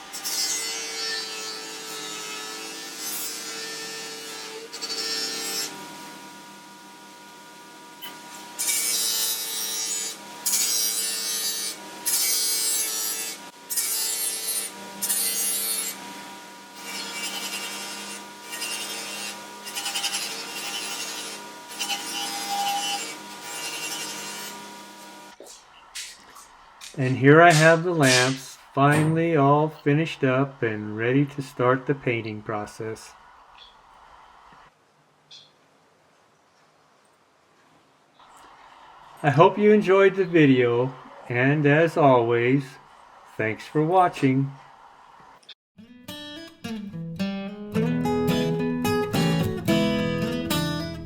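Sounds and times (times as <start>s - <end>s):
polishing wheel motor hum: 3.8s - 27.0s.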